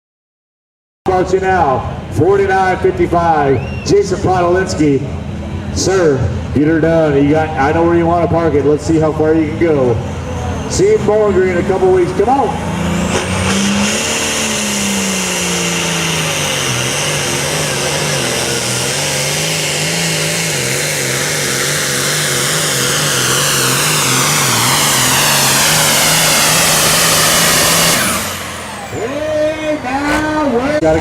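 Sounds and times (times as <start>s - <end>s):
tractor diesel engine at full throttle: 1.1s - 31.0s.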